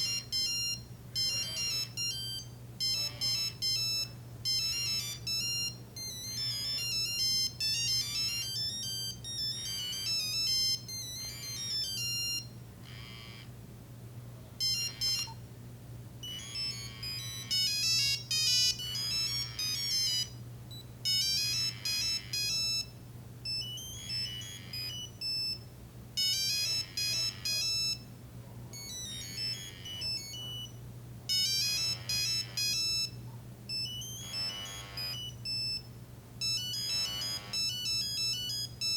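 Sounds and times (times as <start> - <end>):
ringtone electronic beeping melody: 0.0 - 13.5, 14.6 - 15.4, 16.2 - 25.6, 26.2 - 28.1, 28.8 - 38.9.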